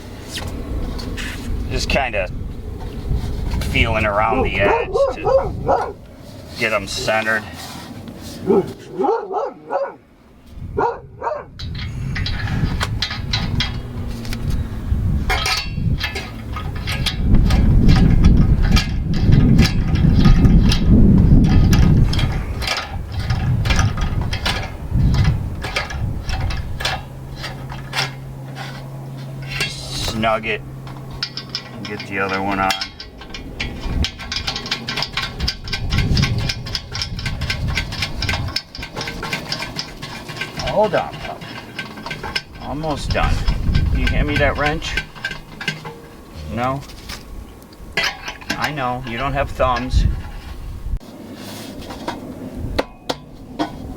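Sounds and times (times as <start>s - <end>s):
steady low rumble: 0.0s - 51.3s
dog barking: 4.5s - 6.0s, 8.5s - 10.0s, 10.8s - 11.5s.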